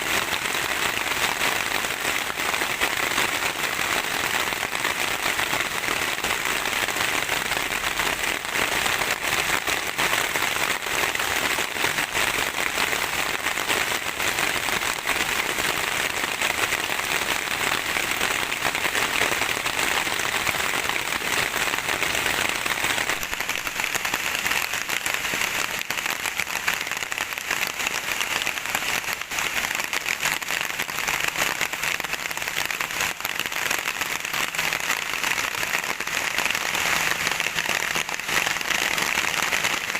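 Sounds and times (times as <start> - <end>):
heavy rain on a surface: 0.0 - 39.9.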